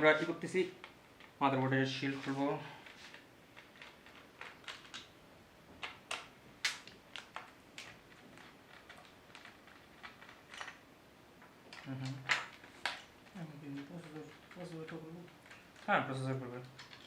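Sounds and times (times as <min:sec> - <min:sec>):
light clicks and taps: 0:11.4 - 0:17.0.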